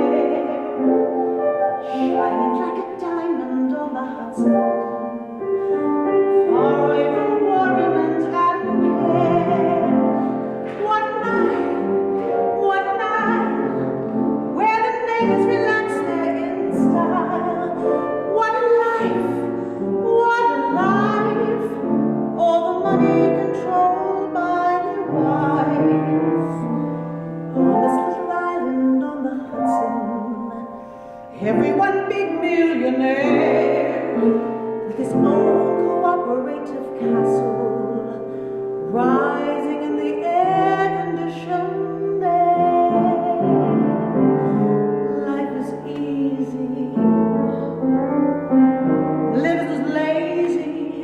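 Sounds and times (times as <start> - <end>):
person singing: 0.0 - 26.9
piano accompaniment: 0.0 - 51.0.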